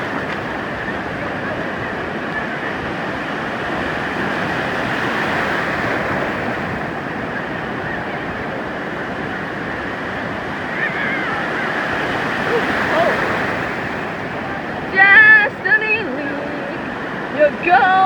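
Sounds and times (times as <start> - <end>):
ocean surf washing onto beach: 0.0 - 18.0.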